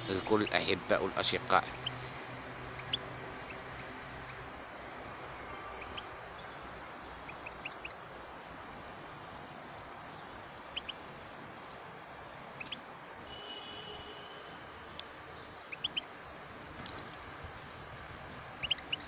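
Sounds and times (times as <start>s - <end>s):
bird chirping: 1.5s - 4.5s, 5.5s - 8.0s, 9.8s - 11.0s, 12.3s - 13.5s, 15.3s - 16.2s, 18.5s - 19.0s.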